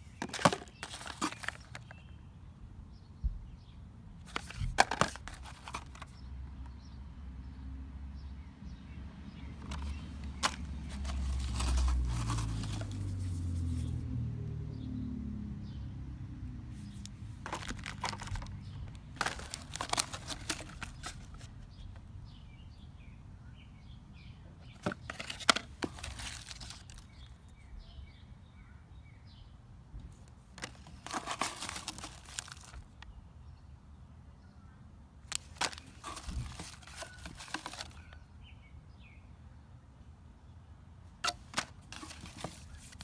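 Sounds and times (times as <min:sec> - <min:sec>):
plastic packaging crinkling: 0:00.2 - 0:01.9, 0:09.6 - 0:13.9, 0:17.4 - 0:21.5, 0:24.8 - 0:27.1, 0:30.6 - 0:32.9, 0:35.3 - 0:38.1, 0:41.2 - 0:43.0.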